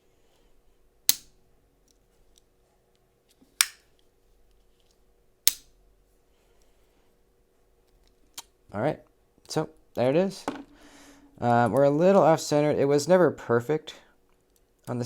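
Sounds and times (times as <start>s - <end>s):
folding knife lock clicks: 1.1s - 1.3s, 3.6s - 3.9s, 5.5s - 5.7s.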